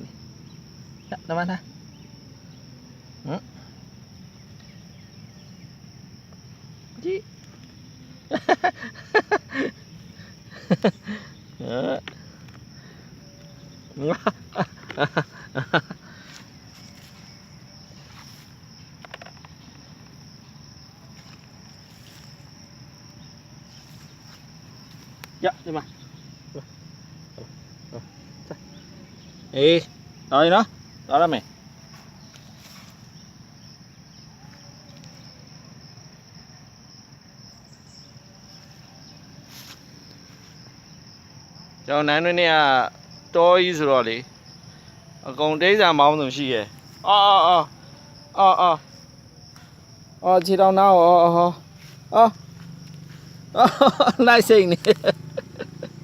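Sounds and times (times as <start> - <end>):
high-pitched insect drone: 0.0 - 56.0.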